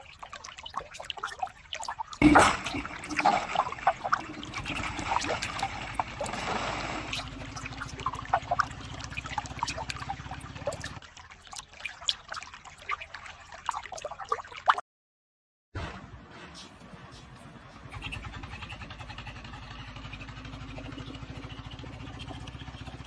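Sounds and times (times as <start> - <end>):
small splashes: 0.0 - 14.8, 18.0 - 23.0
water trickling and dripping: 0.0 - 14.8, 18.0 - 23.0
low steady hum: 2.2 - 11.1.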